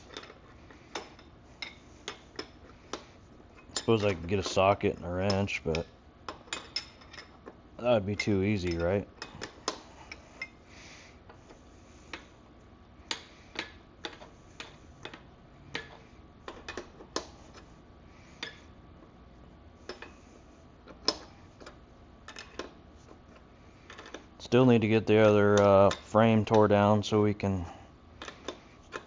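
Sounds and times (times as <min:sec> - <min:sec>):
hand tools clinking on metal: 0:03.6 - 0:09.6.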